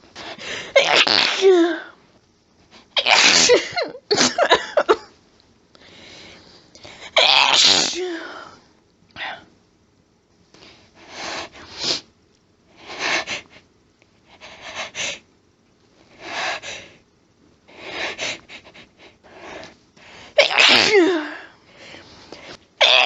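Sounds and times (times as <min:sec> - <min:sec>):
person sneezing loudly: 0:00.7 - 0:02.0, 0:03.0 - 0:05.0, 0:07.2 - 0:08.4, 0:20.4 - 0:21.5, 0:22.8 - 0:23.0.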